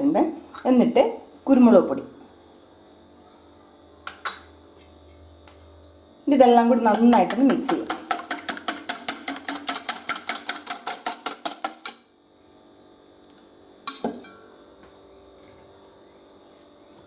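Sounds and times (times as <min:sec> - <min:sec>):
metal utensil clinking in bowl: 0:06.9 - 0:12.0.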